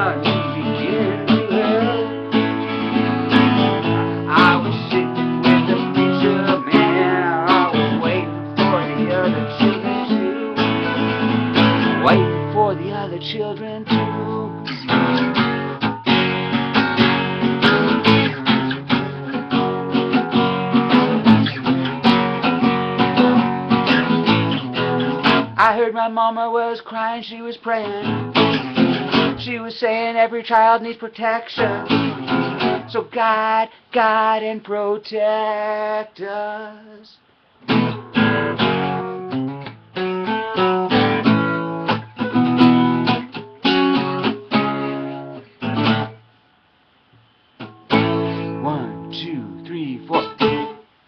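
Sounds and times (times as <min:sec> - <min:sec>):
acoustic guitar strumming: 0:00.0 - 0:36.9, 0:37.6 - 0:46.3, 0:47.2 - 0:51.0.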